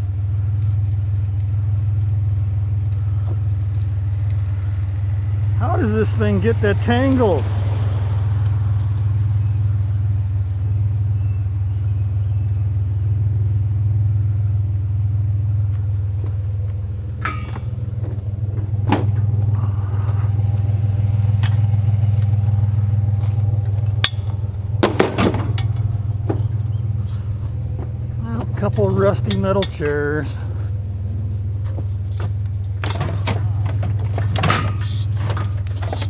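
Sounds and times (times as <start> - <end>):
truck engine idling: 0.0 - 36.0
sharp clanks and knocks: 17.2 - 19.5, 23.2 - 29.9, 31.6 - 36.0.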